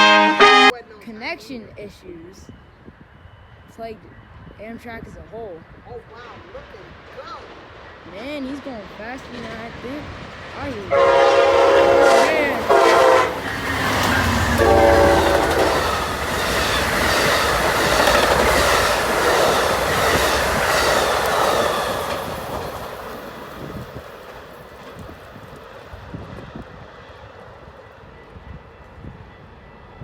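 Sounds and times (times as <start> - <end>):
train horn blast: 0.0 - 0.8, 10.9 - 16.2
train wheels clattering on rails: 6.9 - 29.2.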